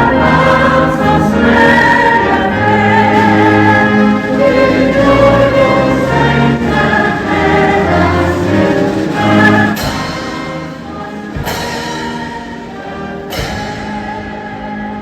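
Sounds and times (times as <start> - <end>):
choir singing: 0.0 - 15.0
orchestra playing: 0.0 - 15.0
sharp percussive strikes: 6.8 - 15.0.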